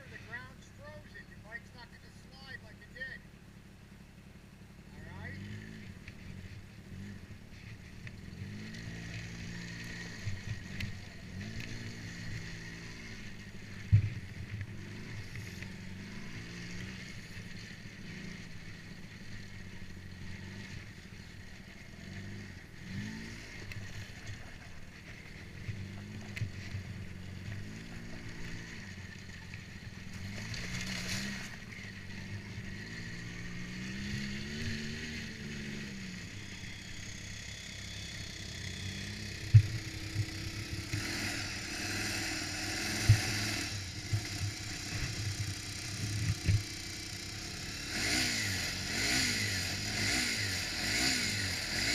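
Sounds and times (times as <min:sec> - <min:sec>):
quad bike engine revving: 0:04.9 - 0:51.9.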